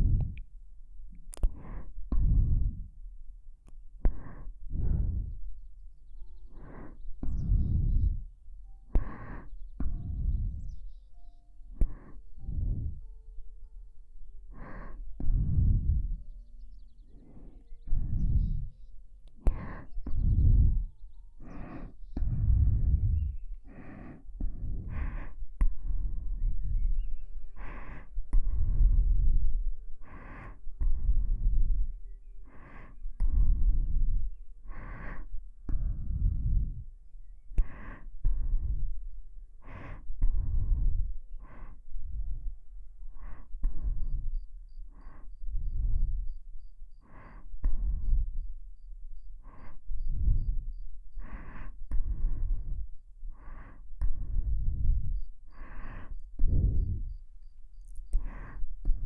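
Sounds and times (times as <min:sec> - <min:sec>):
close breathing into microphone: 0:00.0 - 0:59.0.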